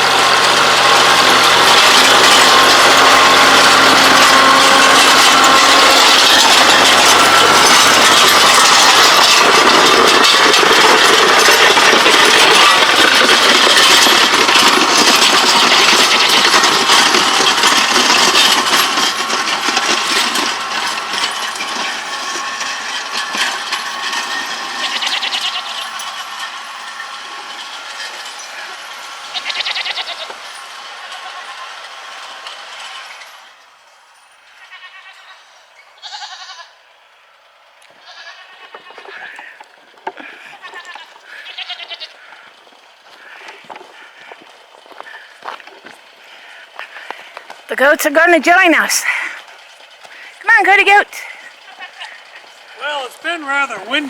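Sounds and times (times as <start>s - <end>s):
diesel tractor running: 0.0s - 54.0s.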